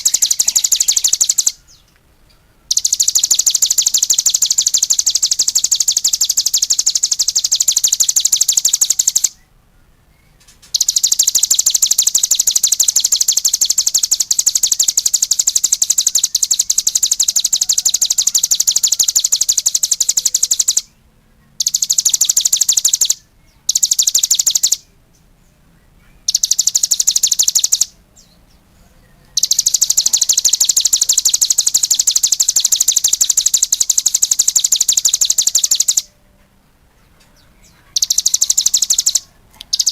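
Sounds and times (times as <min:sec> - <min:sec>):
songbird fast high trill: 0:00.0 - 0:01.9, 0:02.6 - 0:09.4, 0:10.4 - 0:21.0, 0:21.6 - 0:25.0, 0:26.0 - 0:28.4, 0:29.3 - 0:36.2, 0:37.6 - 0:39.9.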